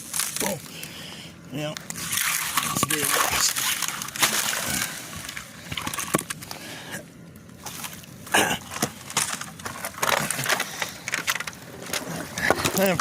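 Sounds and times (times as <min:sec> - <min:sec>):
ice cracking and crunching: 0:00.0 - 0:06.6, 0:07.6 - 0:13.0
water sloshing: 0:01.9 - 0:06.5, 0:07.6 - 0:13.0.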